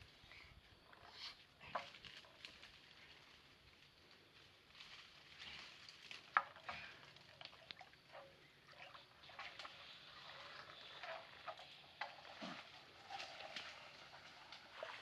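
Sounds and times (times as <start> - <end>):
water splashing and trickling: 5.1 - 15.0.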